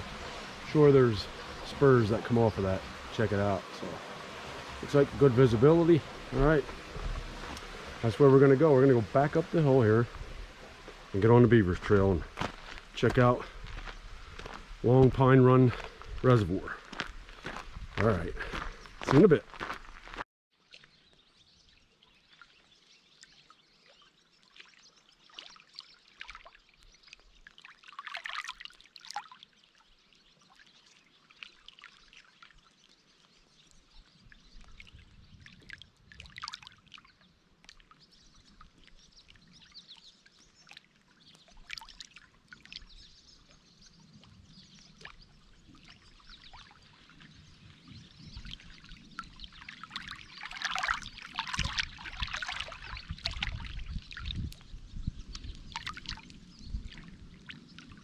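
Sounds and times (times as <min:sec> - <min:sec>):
footsteps crunching on trail: 0:06.1 - 0:08.1, 0:10.1 - 0:20.2.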